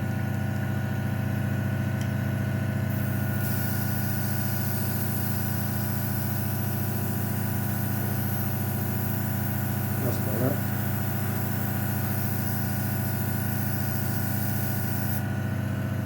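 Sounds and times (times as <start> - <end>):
compressor humming: 0.0 - 16.0
airbrush hissing: 2.9 - 15.2.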